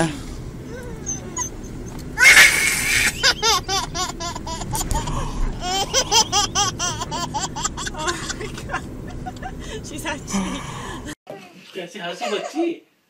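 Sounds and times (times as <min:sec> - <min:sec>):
baby laughing: 0:02.2 - 0:09.5.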